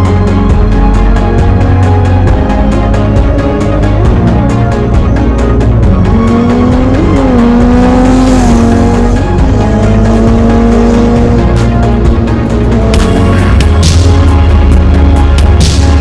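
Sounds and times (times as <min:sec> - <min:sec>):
background music: 0:00.0 - 0:16.0
motorcycle engine pulling hard: 0:05.8 - 0:14.0.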